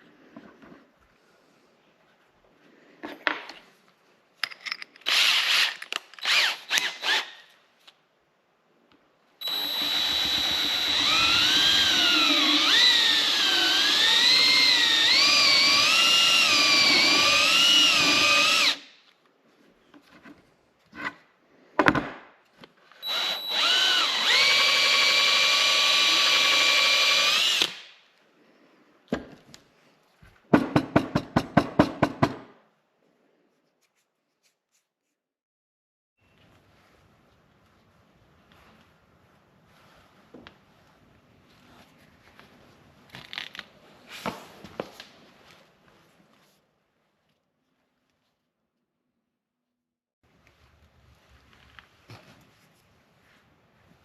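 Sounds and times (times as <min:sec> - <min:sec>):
rotary hammer drill whining: 0:05.1 - 0:07.3, 0:09.4 - 0:18.8, 0:23.0 - 0:27.9.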